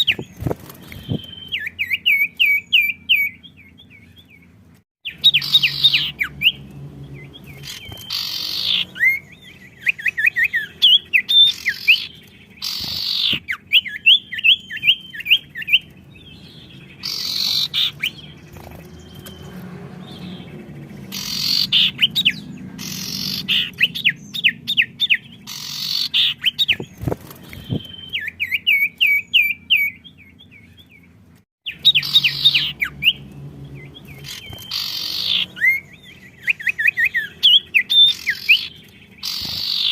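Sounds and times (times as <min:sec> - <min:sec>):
songbirds chirping and calling: 0:00.0 - 0:39.9.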